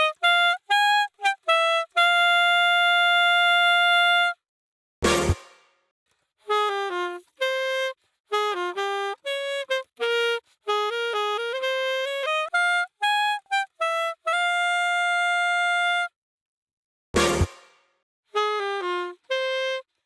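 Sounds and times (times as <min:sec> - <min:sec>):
alto saxophone phrase: 0:06.5 - 0:16.1, 0:18.4 - 0:19.9.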